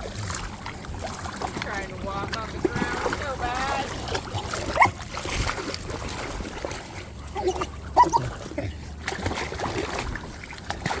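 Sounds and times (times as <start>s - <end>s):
dogs splashing in shallow water: 0.0s - 11.0s.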